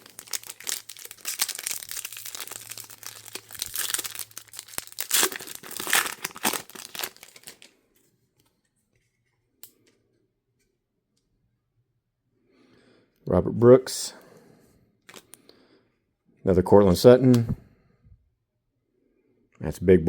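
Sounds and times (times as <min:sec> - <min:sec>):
wrapper tearing and crinkling: 0:00.0 - 0:07.7.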